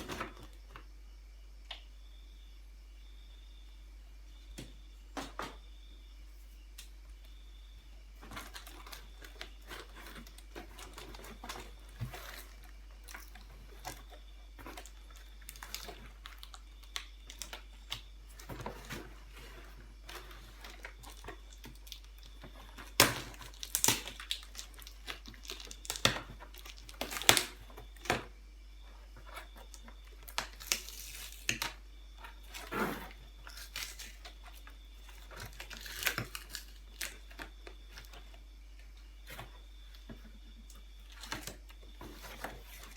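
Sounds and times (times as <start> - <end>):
packaging crinkling and tearing: 14.7 - 17.6, 20.5 - 27.6, 30.2 - 31.7, 35.2 - 37.6.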